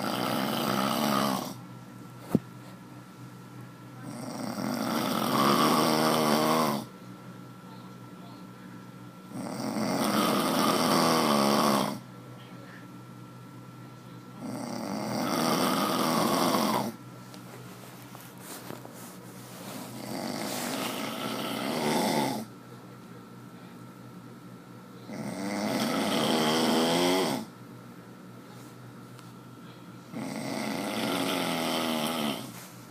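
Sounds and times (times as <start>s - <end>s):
man snoring: 0.0s - 1.6s, 4.0s - 6.9s, 9.3s - 12.0s, 14.4s - 17.0s, 19.9s - 22.5s, 25.1s - 27.5s, 30.1s - 32.6s.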